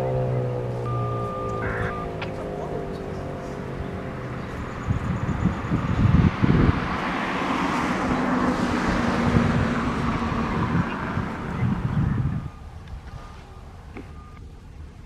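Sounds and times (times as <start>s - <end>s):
vehicle tyre and road noise: 0.0s - 15.0s
wind rumbling on microphone: 3.7s - 15.0s.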